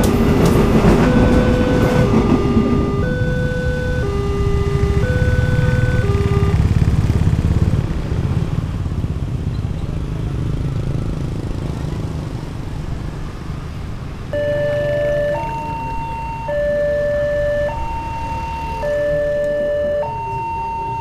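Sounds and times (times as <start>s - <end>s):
level-crossing two-tone siren: 0.0s - 6.9s, 14.3s - 21.0s
low vehicle rumble: 0.0s - 21.0s.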